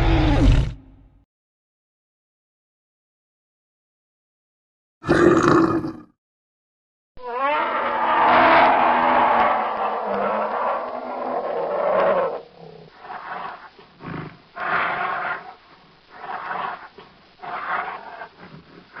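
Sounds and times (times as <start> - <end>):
creature roaring: 0.0 - 1.0, 5.0 - 6.1, 7.2 - 19.0
growling roars: 0.0 - 1.0, 5.0 - 6.1, 7.2 - 19.0.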